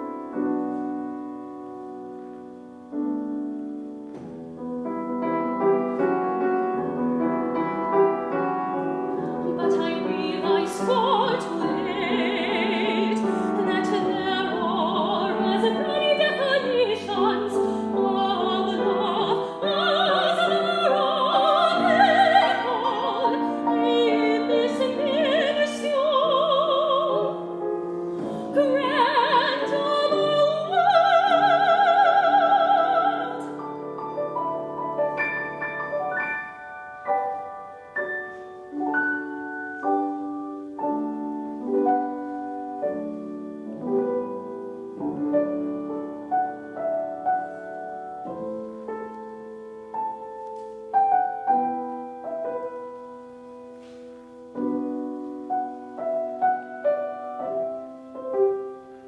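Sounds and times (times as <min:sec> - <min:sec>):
piano accompaniment: 0:00.0 - 0:59.0
soprano singing with vibrato: 0:08.8 - 0:34.4.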